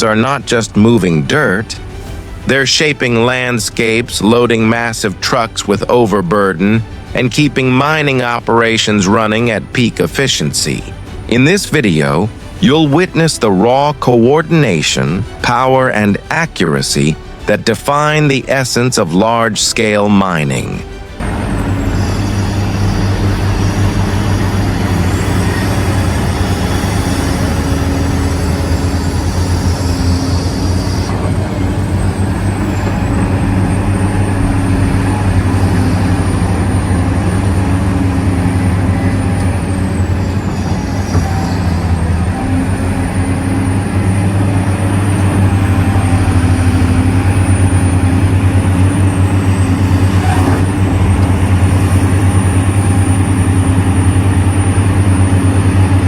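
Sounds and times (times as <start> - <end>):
heavy diesel machinery droning: 0.0 - 56.0
high-pitched machine whine: 20.9 - 56.0.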